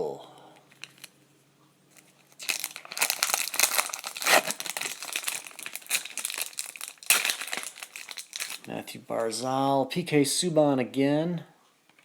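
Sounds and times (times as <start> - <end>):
wrapper tearing and crinkling: 0.7 - 1.1, 1.9 - 8.7.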